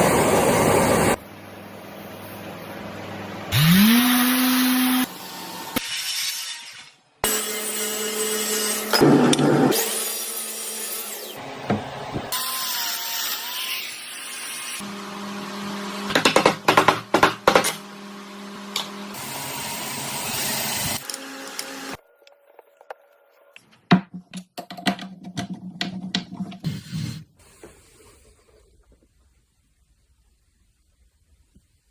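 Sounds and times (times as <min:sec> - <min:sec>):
power tools working wood: 0:03.5 - 0:05.8.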